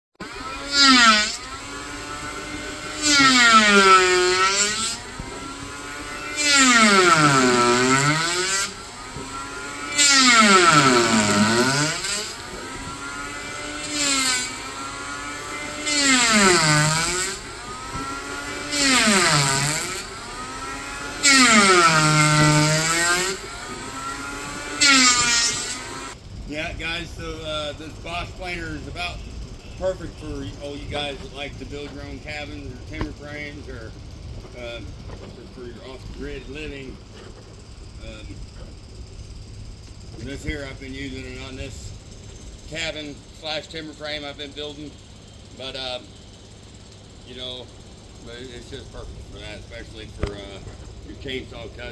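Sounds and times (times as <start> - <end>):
electric planer cutting wood: 0.2 - 26.2.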